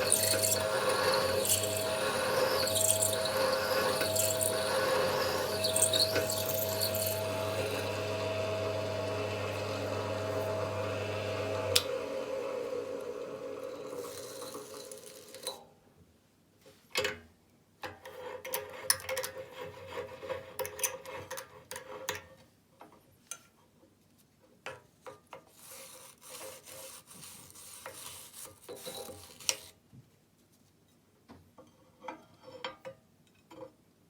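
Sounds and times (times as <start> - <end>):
scraping on metal: 0.0 - 8.0
motor hum: 0.0 - 14.2.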